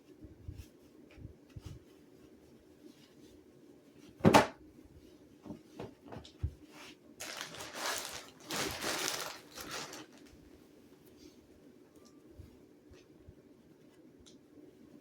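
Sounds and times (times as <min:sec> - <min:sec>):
padding material rustling: 0:06.7 - 0:10.5.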